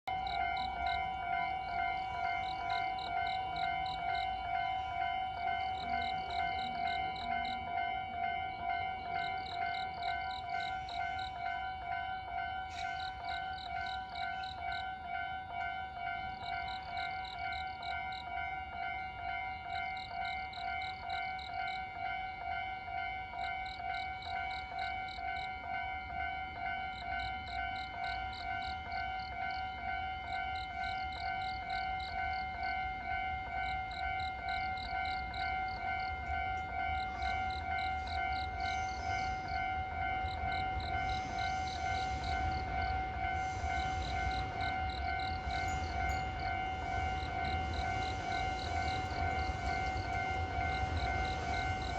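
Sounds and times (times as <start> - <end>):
approaching train rumble: 0.0 - 51.9
level-crossing warning bell clanging: 0.0 - 51.9.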